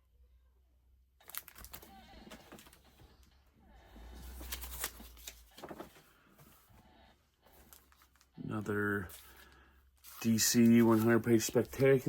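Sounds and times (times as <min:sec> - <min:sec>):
plastic crinkling and rustling: 0:01.2 - 0:03.3, 0:04.3 - 0:06.7, 0:07.5 - 0:08.4, 0:09.0 - 0:12.0.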